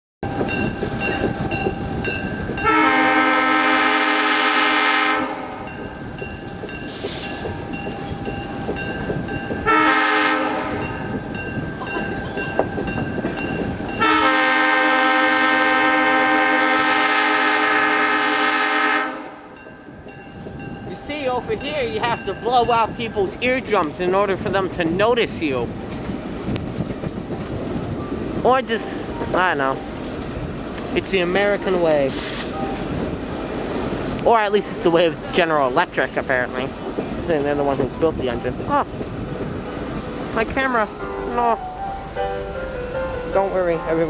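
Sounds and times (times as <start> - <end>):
train rumble and rail noise: 0.2 - 44.0
locomotive air horn blasts: 2.6 - 5.7, 9.6 - 11.0, 14.0 - 19.5.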